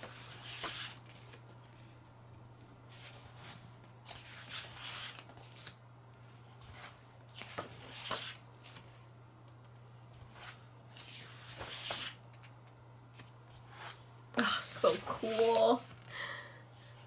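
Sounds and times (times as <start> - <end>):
paper pages rustling: 0.0 - 2.0, 2.9 - 5.8, 6.6 - 8.9, 10.2 - 12.6, 14.9 - 16.1.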